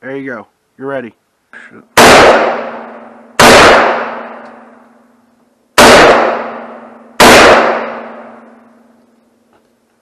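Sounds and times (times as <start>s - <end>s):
rifle shots echoing: 2.0s - 4.8s, 5.8s - 8.6s.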